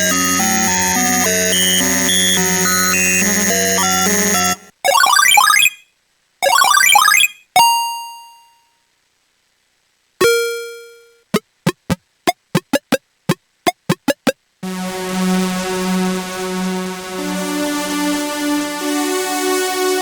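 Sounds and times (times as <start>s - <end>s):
short plucked synth blips: 10.2s - 15.2s
sustained synth chord: 14.6s - 20.0s.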